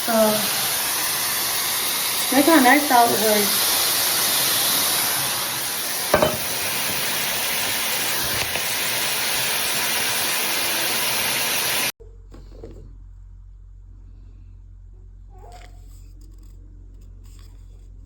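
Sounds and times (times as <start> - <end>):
shower head spraying water: 0.0 - 11.9.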